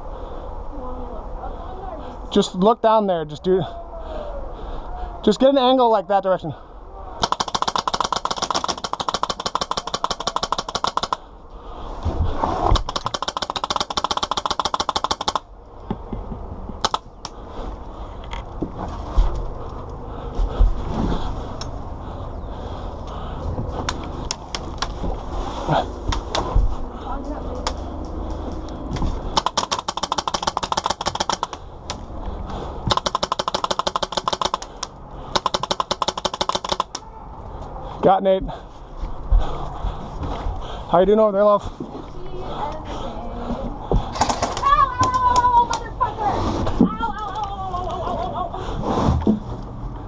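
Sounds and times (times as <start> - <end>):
airsoft gun firing full auto: 7.2 - 11.2, 12.8 - 15.5, 29.3 - 31.6, 32.9 - 34.6, 35.3 - 37.0.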